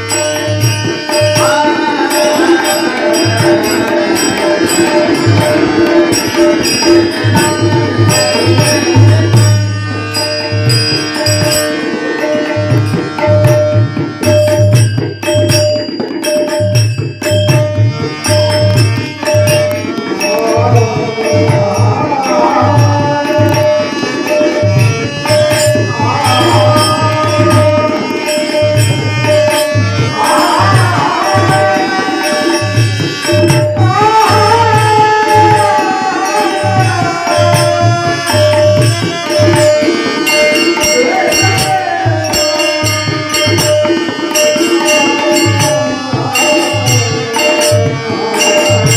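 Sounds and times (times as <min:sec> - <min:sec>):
held drone note: 0:00.0 - 0:48.9
tabla rhythm: 0:00.0 - 0:48.9
person singing: 0:01.1 - 0:09.6, 0:18.3 - 0:48.9.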